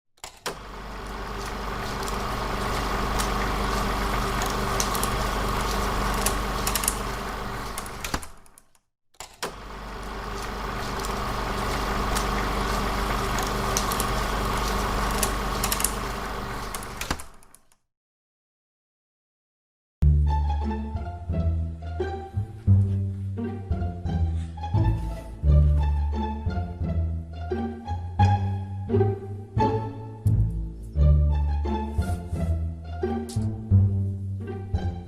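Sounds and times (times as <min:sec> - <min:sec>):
sharp clicks: 0:00.2 - 0:17.8
mechanical hum with low rumble: 0:00.4 - 0:08.6, 0:09.4 - 0:17.6.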